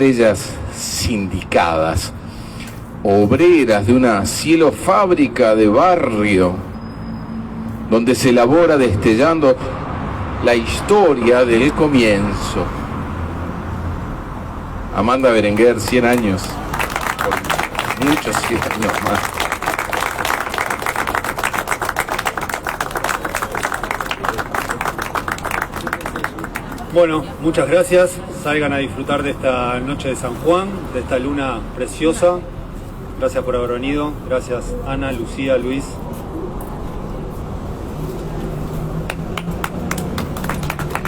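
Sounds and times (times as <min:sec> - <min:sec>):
audience applauding: 0:15.5 - 0:27.0, 0:39.1 - 0:41.0.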